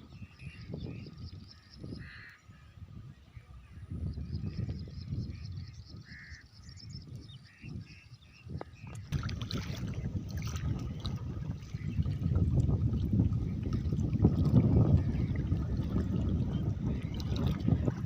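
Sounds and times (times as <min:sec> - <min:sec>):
floodwater rushing: 0:09.1 - 0:18.0.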